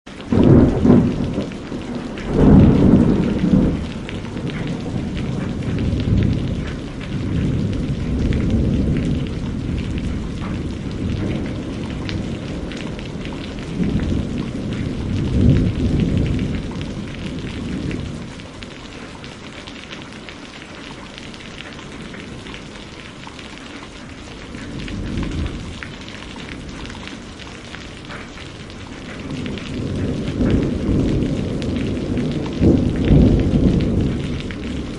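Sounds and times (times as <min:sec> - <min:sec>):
heavy rain: 0:00.0 - 0:34.9
loud thunderclap: 0:00.2 - 0:18.4, 0:24.5 - 0:26.8, 0:28.7 - 0:34.9
low thunder rumbling: 0:00.2 - 0:19.4, 0:24.1 - 0:34.9.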